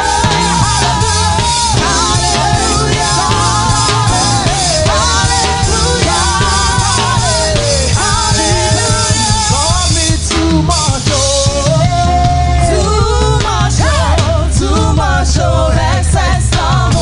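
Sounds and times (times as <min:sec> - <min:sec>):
person singing: 0:00.0 - 0:15.3
band with heavy bass and beat: 0:00.0 - 0:17.0.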